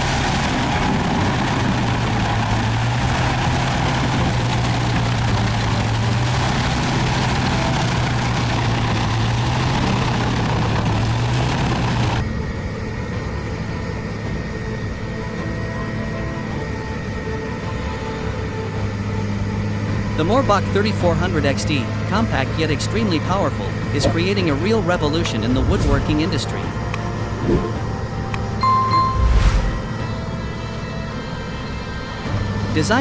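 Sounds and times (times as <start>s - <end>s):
heavy machine engine droning: 0.0s - 33.0s.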